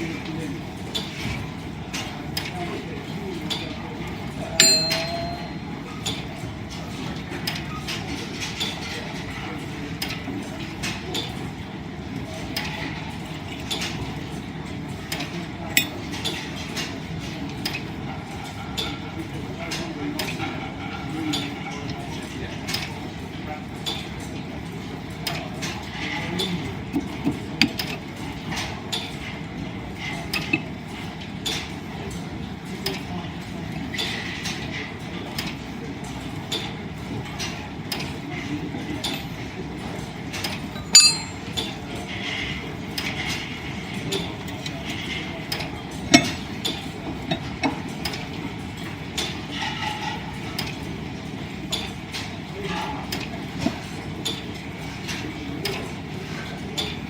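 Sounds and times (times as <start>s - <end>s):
metallic clink: 4.6s - 5.6s, 40.8s - 41.5s.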